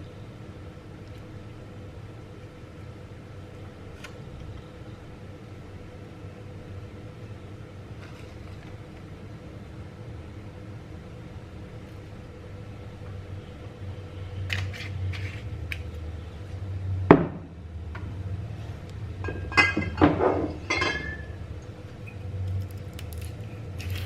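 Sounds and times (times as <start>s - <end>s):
dishes and glassware clinking: 19.2s - 21.4s.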